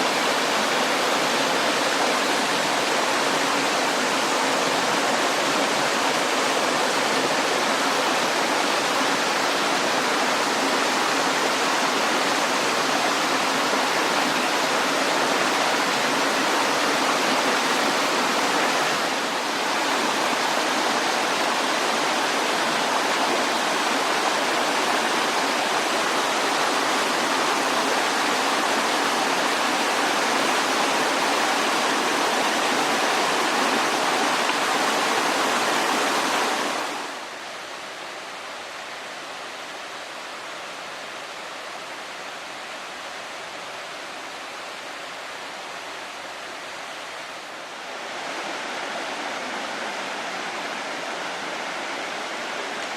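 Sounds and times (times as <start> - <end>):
stream water rushing: 0.0 - 52.9.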